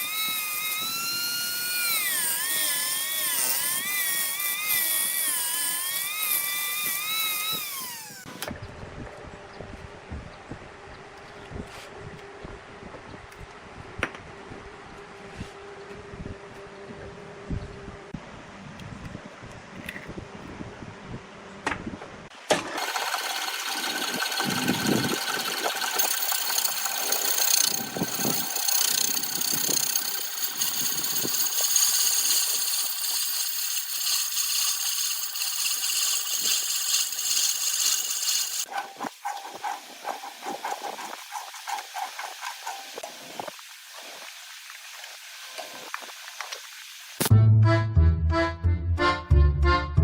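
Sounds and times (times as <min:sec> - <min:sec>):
wood lathe cutting: 0:00.0 - 0:08.3, 0:22.5 - 0:38.7.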